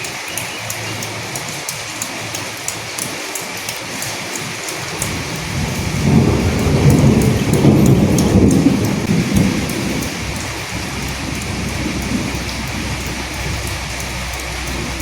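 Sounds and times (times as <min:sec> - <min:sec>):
sharp drips: 0:00.0 - 0:15.0
steady rain: 0:00.0 - 0:15.0
thunder rumble: 0:04.9 - 0:15.0.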